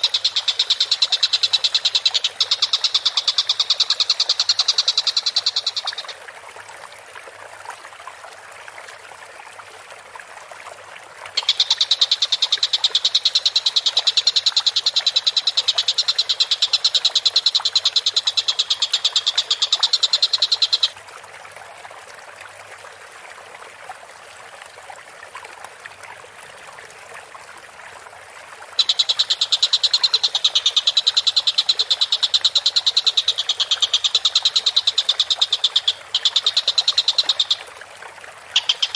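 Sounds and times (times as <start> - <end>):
kingfisher rattling trills: 0.0 - 6.1, 11.4 - 20.9, 28.8 - 37.6, 38.5 - 38.9.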